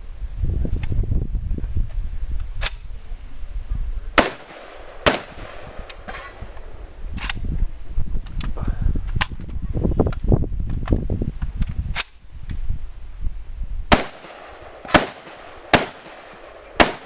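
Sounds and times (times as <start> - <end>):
steady low rumble: 0.0 - 17.0
shotgun shots: 4.2 - 6.4, 13.9 - 17.0.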